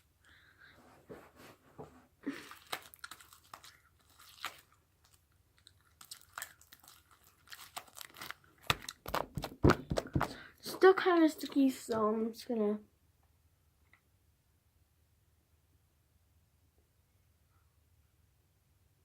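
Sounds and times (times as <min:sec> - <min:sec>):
slime squelching and popping: 0:02.3 - 0:10.5.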